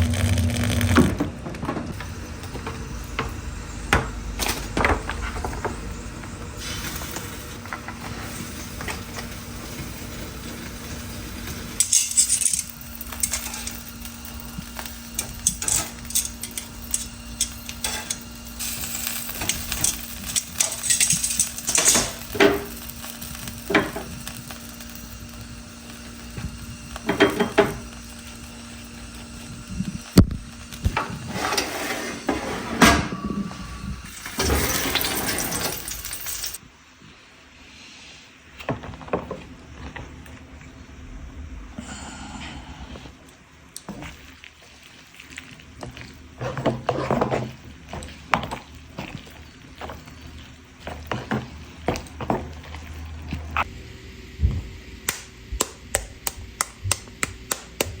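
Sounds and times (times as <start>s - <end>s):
faint hum: 0.0s - 38.3s, 39.5s - 43.8s.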